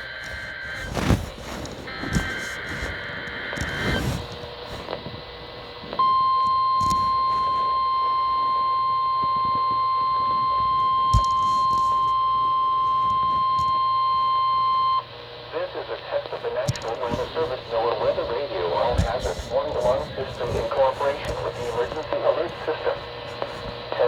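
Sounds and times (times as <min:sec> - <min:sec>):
steady alarm tone: 0:00.0 - 0:15.5.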